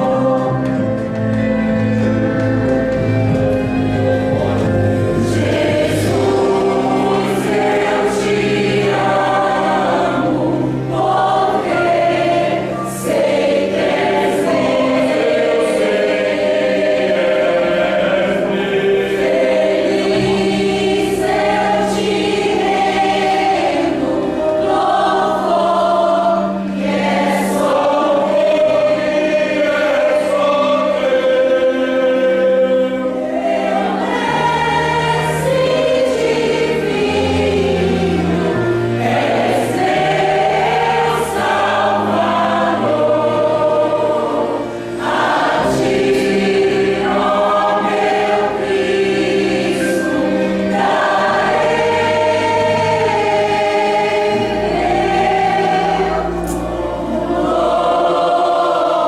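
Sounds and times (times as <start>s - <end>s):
choir singing: 0.0s - 59.0s.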